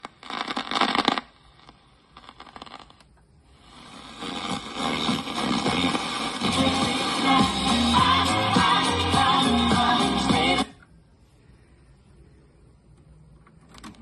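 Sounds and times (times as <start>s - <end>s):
vinyl stylus crackle and clicks: 0.0s - 7.3s
record music playing: 3.8s - 10.8s.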